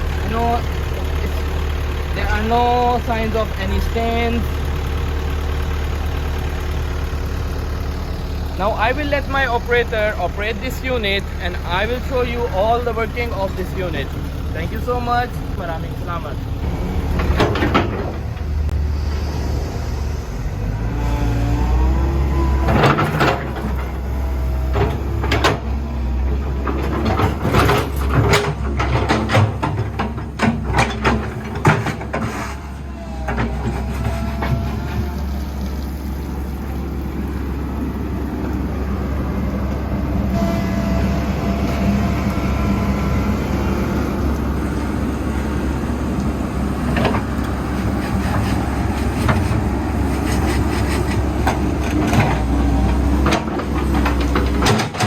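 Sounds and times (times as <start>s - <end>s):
excavator diesel engine running: 0.0s - 55.0s
sharp knocks and rattles: 17.2s - 18.6s, 26.4s - 34.9s.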